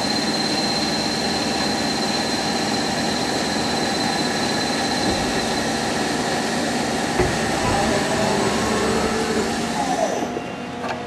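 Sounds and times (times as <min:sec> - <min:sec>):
milling machine running: 0:01.7 - 0:10.5
high-pitched whine: 0:07.5 - 0:10.5.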